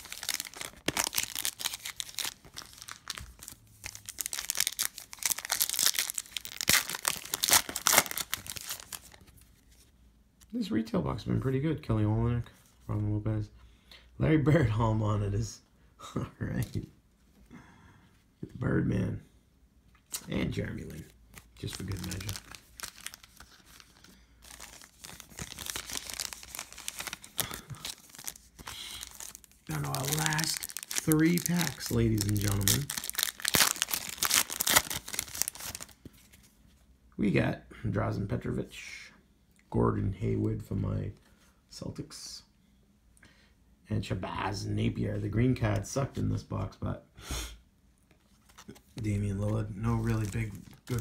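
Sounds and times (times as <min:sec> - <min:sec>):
wrapper crinkling and tearing: 0:00.0 - 0:09.4, 0:20.9 - 0:36.0, 0:49.8 - 0:51.0
cards being handled: 0:20.2 - 0:36.5, 0:48.2 - 0:51.0.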